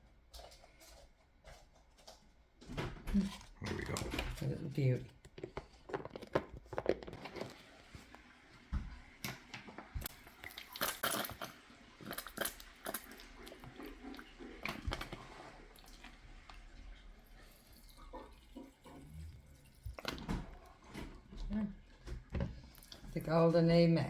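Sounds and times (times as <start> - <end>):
plastic packaging crinkling: 3.2 - 7.9.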